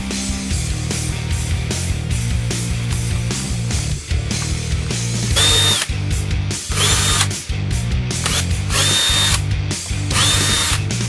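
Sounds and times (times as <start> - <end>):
background music: 0.0 - 11.0
power drill whining: 5.3 - 5.9, 6.7 - 7.4, 8.2 - 9.4, 10.0 - 10.9.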